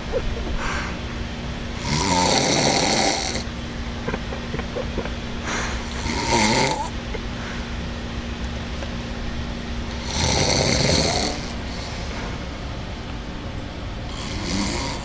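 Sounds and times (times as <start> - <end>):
faint steady hum: 0.0 - 15.0
faint breath: 0.4 - 1.2, 5.4 - 8.0, 11.1 - 12.7
man snoring: 1.7 - 7.9, 9.8 - 12.6, 14.1 - 15.0.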